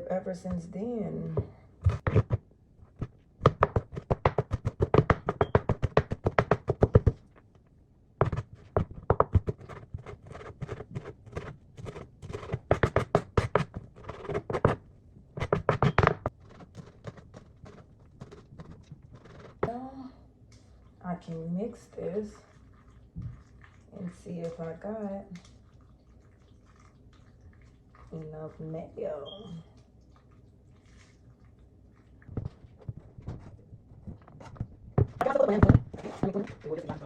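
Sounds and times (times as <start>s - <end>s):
knife chopping on cutting board: 1.8s - 2.4s, 3.0s - 7.2s, 8.2s - 14.8s, 15.4s - 19.7s.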